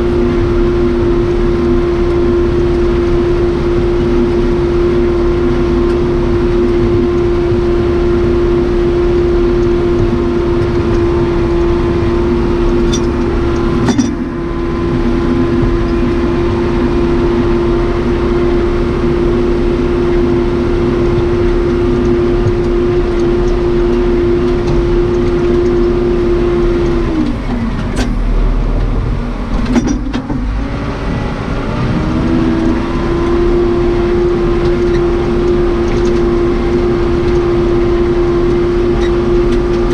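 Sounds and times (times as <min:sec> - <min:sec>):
backhoe diesel engine running: 0:00.0 - 0:39.9
short clunks: 0:10.0 - 0:16.1.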